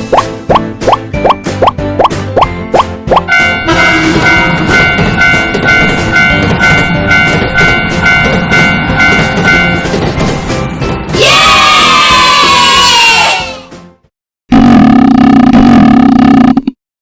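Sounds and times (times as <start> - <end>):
level-crossing warning bell: 3.3 - 10.2
passing train rumble: 3.3 - 11.7.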